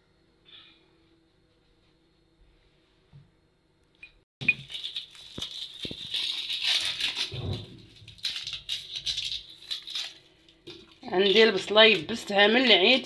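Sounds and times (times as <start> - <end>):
crinkly rustling: 4.5 - 13.0.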